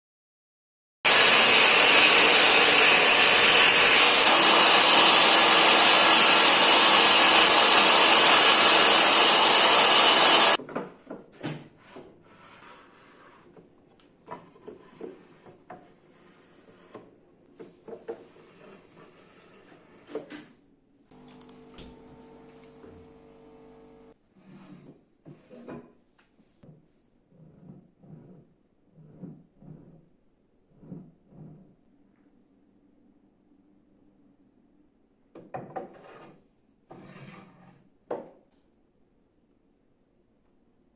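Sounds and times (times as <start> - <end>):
power tool running: 1.1 - 10.6, 21.1 - 24.2.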